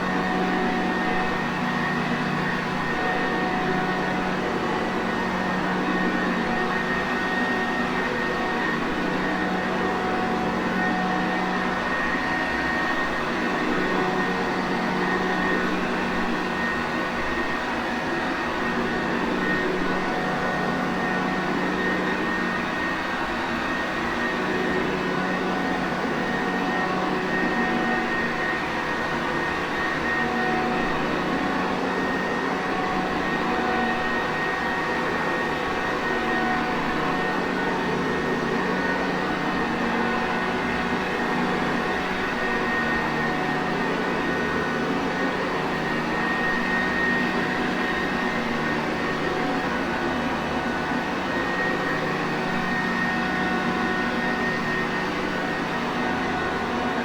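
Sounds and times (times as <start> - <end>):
vacuum cleaner running: 18.3 - 57.0.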